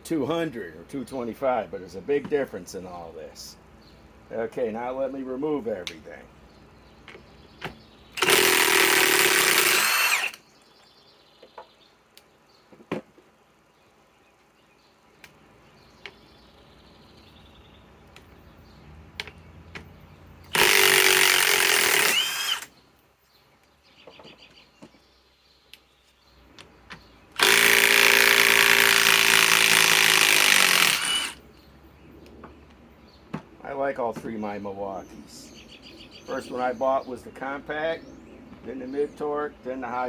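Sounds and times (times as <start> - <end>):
impact wrench hammering: 8.2 - 10.4, 20.5 - 22.7, 27.4 - 31.4.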